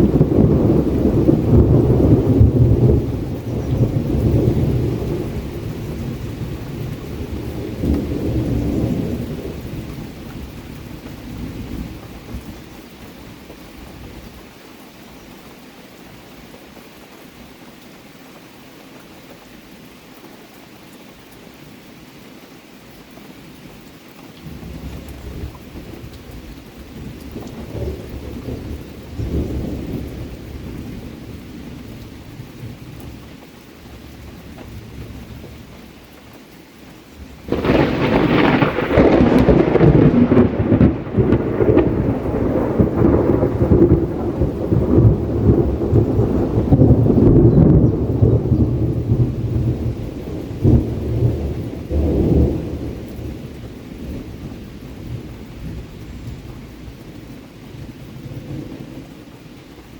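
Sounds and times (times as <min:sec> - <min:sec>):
rolling thunder: 0:00.0 - 0:12.6, 0:24.4 - 0:33.2, 0:37.2 - 0:56.5
rain hissing: 0:00.0 - 0:59.9.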